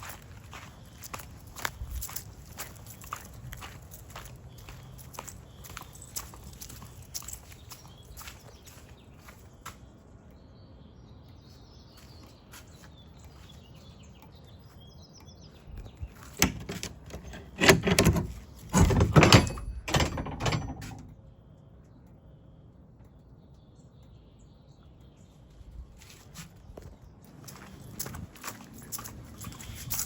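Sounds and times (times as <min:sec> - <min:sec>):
loud irregular knocks and thuds: 0:16.4 - 0:21.1.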